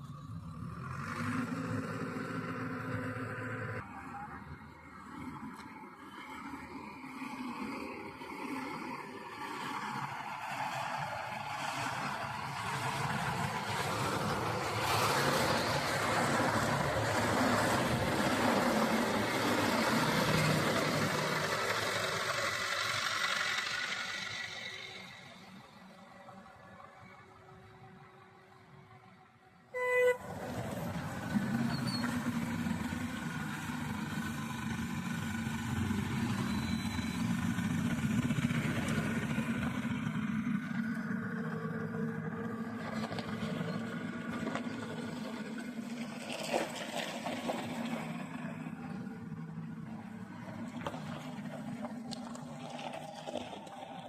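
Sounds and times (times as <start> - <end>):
heavy diesel machinery running: 0.0 - 29.2, 29.8 - 54.0
horn toot: 29.7 - 30.4.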